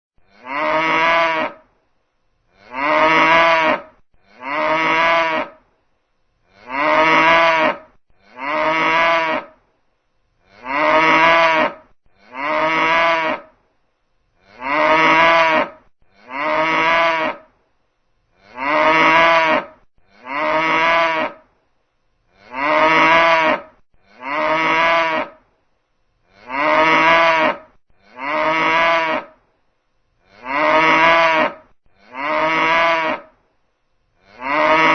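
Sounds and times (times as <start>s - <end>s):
cow mooing: 0.2s - 1.6s, 2.6s - 5.6s, 6.5s - 9.6s, 10.5s - 13.5s, 14.5s - 17.5s, 18.4s - 21.4s, 22.4s - 25.4s, 26.3s - 29.4s, 30.3s - 33.3s, 34.2s - 34.9s.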